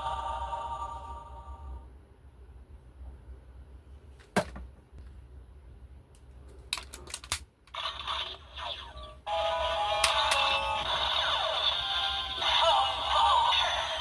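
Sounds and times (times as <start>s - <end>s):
toy gun plastic clicks: 6.7s - 7.4s
toy electronic sound effect: 7.7s - 14.0s.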